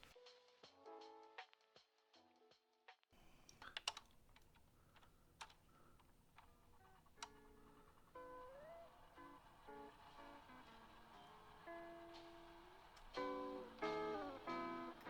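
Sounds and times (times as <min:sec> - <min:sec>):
light clicks and taps: 0:03.2 - 0:09.4
faint background guitar music: 0:07.3 - 0:15.0.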